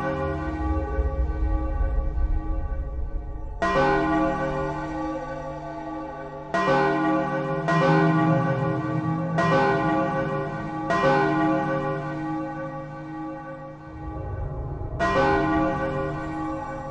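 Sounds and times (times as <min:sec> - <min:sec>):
bell tolling: 0:13.7 - 0:16.9.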